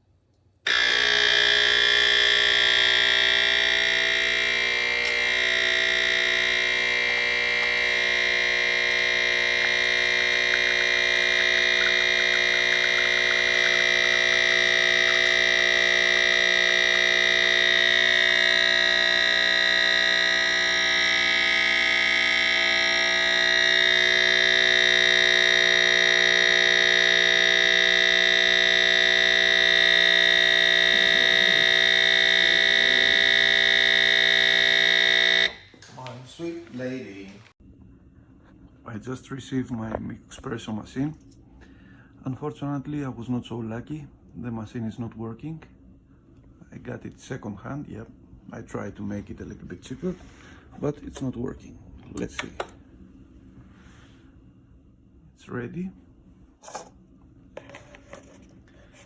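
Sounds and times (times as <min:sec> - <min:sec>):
synthesizer drone: 0:00.7 - 0:35.6.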